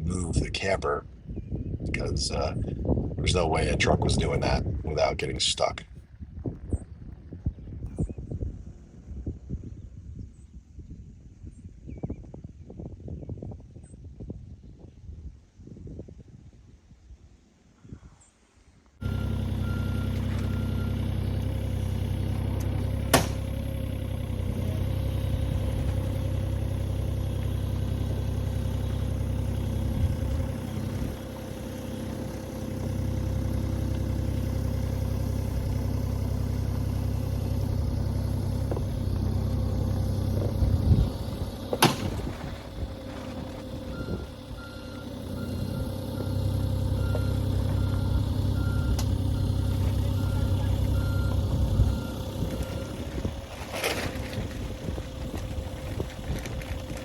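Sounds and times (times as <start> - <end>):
travel alarm beeping: 19.0 - 21.0, 43.9 - 53.0
diesel engine running: 19.0 - 57.0.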